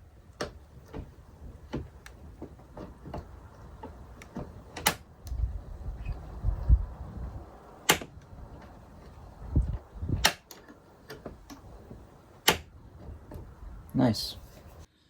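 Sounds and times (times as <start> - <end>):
lock being handled knocks: 0.0 - 6.3, 7.2 - 13.9
deadbolt clicking: 0.0 - 6.4, 7.2 - 13.9.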